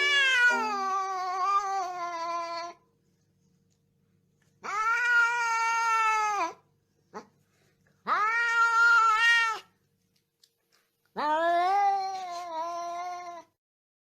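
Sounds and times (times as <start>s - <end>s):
cat chirp: 0.0s - 2.7s
cat meowing: 0.0s - 2.8s, 4.6s - 6.6s, 8.0s - 9.7s, 11.2s - 13.6s.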